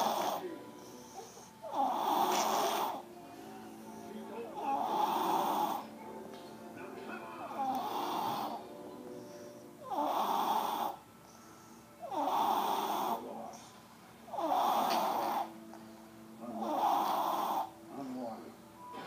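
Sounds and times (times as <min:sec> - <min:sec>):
person snoring: 0:00.0 - 0:05.9, 0:07.6 - 0:08.6, 0:09.8 - 0:11.0, 0:12.0 - 0:13.3, 0:14.3 - 0:15.5, 0:16.5 - 0:18.4.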